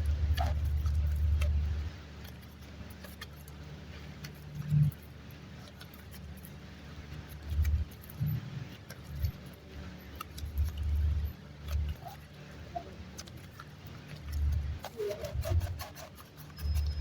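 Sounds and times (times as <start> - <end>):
faint clicks and crackles: 0.0 - 17.0.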